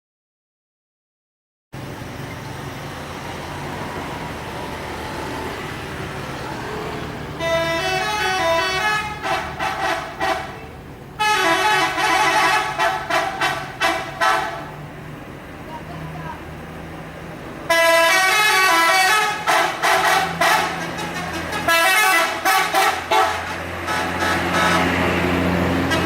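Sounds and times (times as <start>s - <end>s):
vehicle rumble: 1.8s - 26.0s
multi-tone bus horn: 6.6s - 14.8s, 17.7s - 26.0s.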